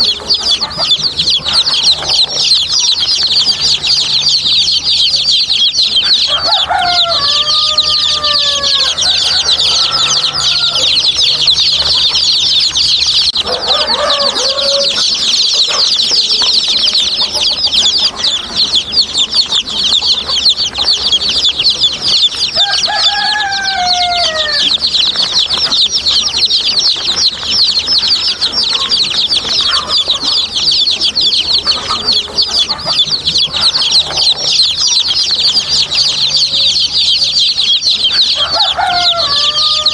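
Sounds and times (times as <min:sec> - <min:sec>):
baby chicks peeping: 0:00.0 - 0:39.9.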